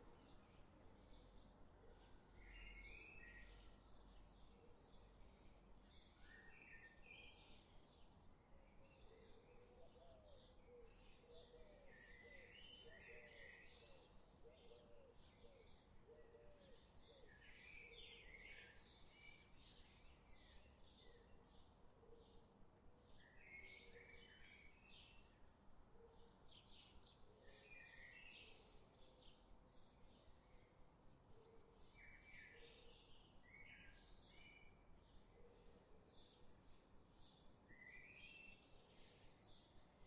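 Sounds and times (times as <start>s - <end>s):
small birds chirping: 31.5s - 40.0s.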